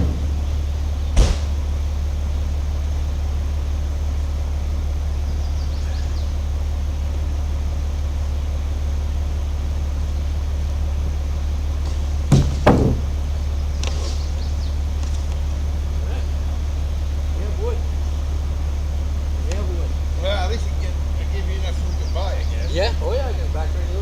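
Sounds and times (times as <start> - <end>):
truck engine idling: 0.0 - 24.0
sharp knocks: 1.2 - 1.6, 11.9 - 13.2.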